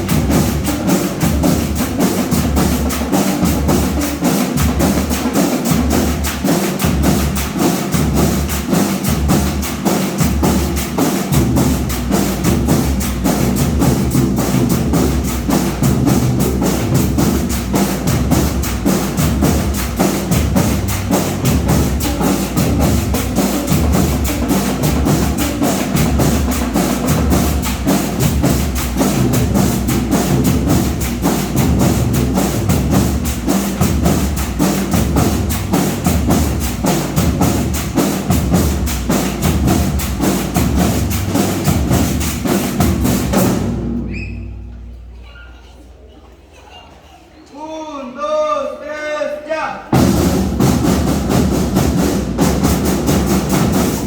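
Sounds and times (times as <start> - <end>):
marching band playing: 0.0 - 45.0, 49.8 - 54.0
drums and percussion: 0.0 - 46.0, 49.8 - 54.0.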